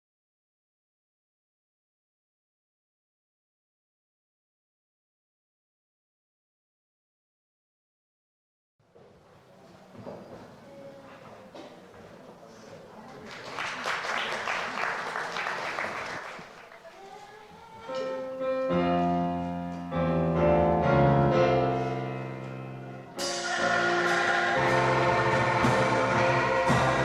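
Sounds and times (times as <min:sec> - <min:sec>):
held music chords: 0:18.0 - 0:27.0
dense noise: 0:23.0 - 0:27.0.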